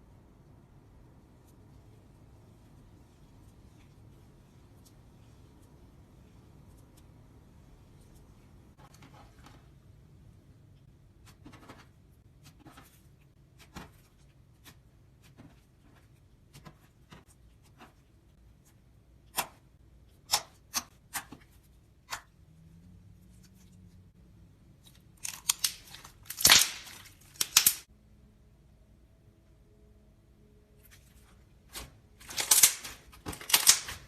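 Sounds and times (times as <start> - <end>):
slime clicking and popping: 25.3 - 27.8.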